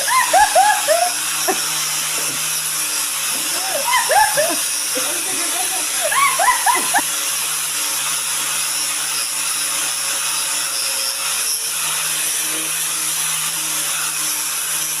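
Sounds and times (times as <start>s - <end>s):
washing machine running: 0.0s - 7.0s.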